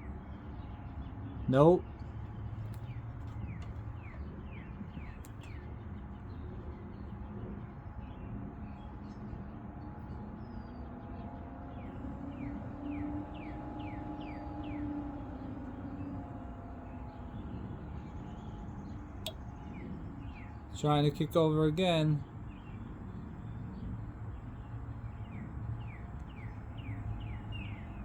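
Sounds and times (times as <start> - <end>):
steady low hum: 11.8 - 28.0
small bird chirping: 22.2 - 28.0.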